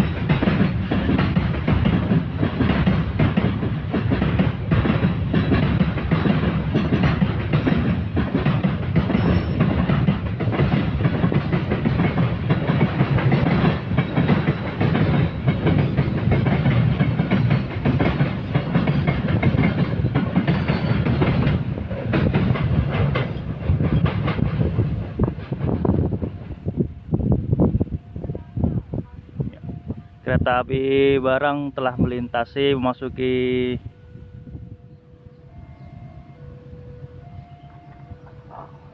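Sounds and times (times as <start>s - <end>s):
wheels clacking over rail joints: 0.0s - 27.5s, 35.3s - 38.9s
freight train wagons rumbling: 0.0s - 38.9s.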